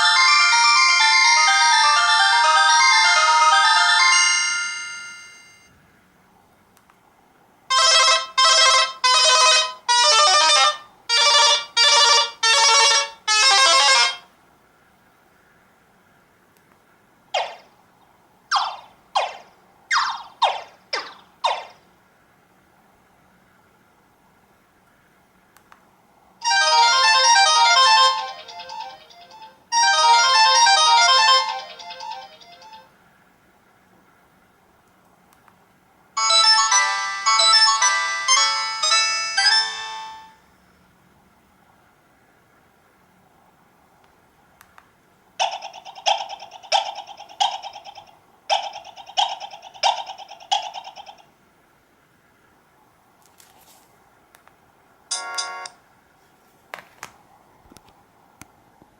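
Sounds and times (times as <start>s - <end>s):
melodic ringtone: 0.0s - 5.7s, 7.7s - 14.2s, 26.4s - 32.9s, 36.2s - 40.4s, 45.4s - 51.2s, 55.1s - 55.8s
ringtone of short loud chords: 0.0s - 5.7s, 7.7s - 14.3s, 26.4s - 32.9s, 36.2s - 40.4s, 55.1s - 55.8s
faint click: 6.8s - 7.0s, 25.6s - 25.9s.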